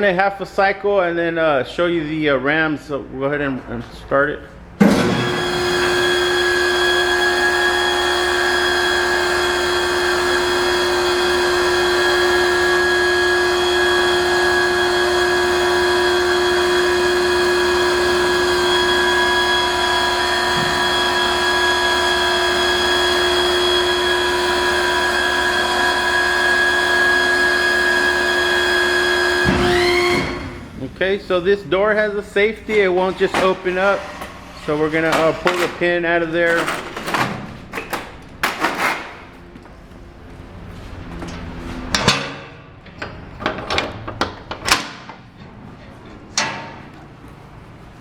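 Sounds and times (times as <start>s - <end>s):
hydraulic pump motor whining: 4.8s - 30.9s, 32.5s - 42.1s.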